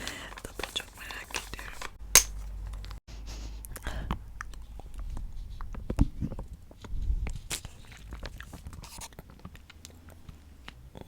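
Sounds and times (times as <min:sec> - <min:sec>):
chewing crunchy snack: 0:07.4 - 0:11.0.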